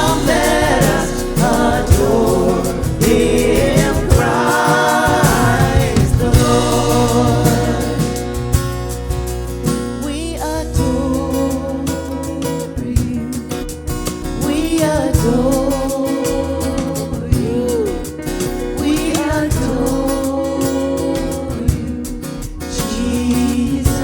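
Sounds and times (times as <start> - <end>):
singers' voices: 0.0 - 8.7, 10.0 - 13.7, 14.4 - 24.0
band playing: 0.0 - 8.9
steady drum beat: 0.0 - 10.0, 10.7 - 24.0.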